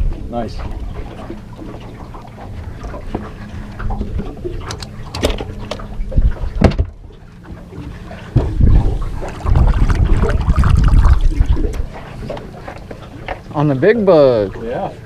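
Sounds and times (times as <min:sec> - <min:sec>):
sharp knocks and clicks: 0:03.9 - 0:05.9.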